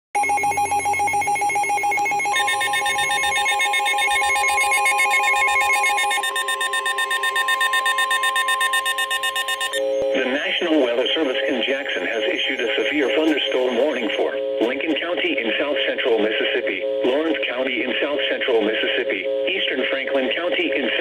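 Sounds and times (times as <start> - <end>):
electronic alert tones: 0.2 - 14.3
steady high alert tone: 0.2 - 15.8.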